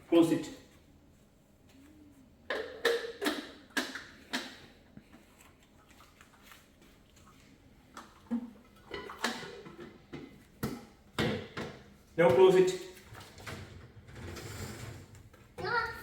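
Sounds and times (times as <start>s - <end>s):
dishes clattering: 8.8s - 10.3s.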